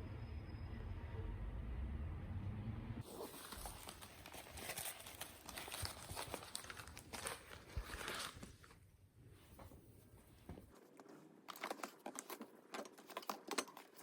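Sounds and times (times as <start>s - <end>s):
shopping bags rustling: 3.0s - 8.9s.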